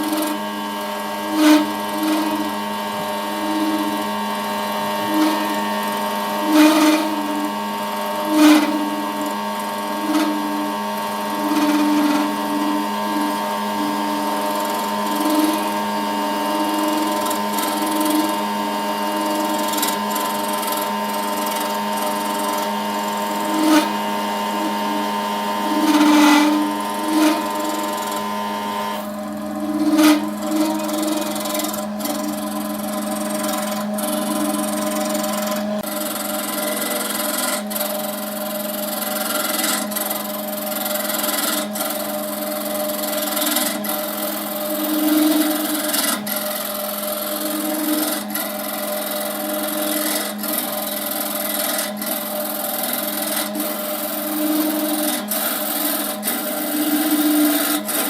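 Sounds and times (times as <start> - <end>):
wood lathe motor humming: 0.0 - 58.0
workpiece being turned: 8.2 - 37.6.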